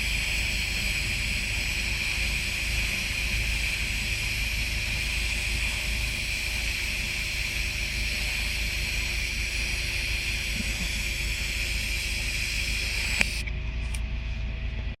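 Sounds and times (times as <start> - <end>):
welding arc hissing: 0.0 - 13.4
click: 12.7 - 14.0.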